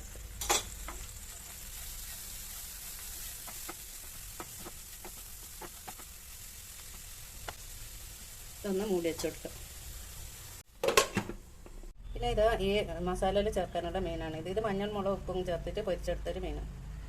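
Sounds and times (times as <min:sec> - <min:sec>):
masala sizzling in a pan: 0:00.0 - 0:10.8.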